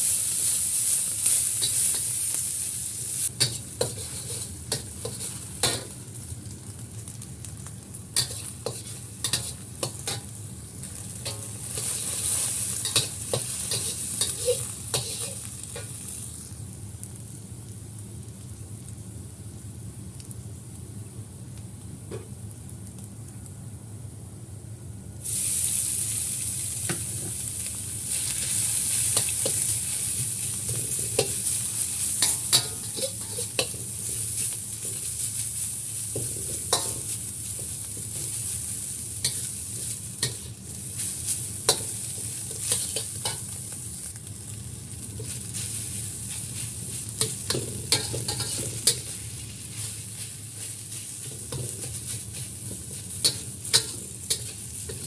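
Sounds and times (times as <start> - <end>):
food sizzling in hot oil: 0.0 - 23.5, 25.2 - 55.0
spatula scraping a pan: 3.4 - 6.0, 8.2 - 15.9, 28.1 - 35.5, 36.1 - 43.5, 45.2 - 55.0.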